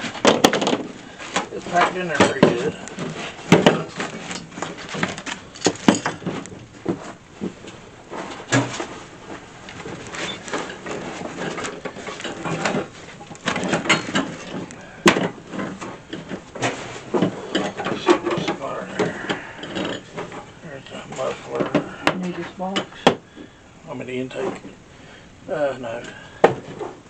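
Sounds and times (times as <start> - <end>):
cardboard box scraping and rustling: 15.4 - 17.4.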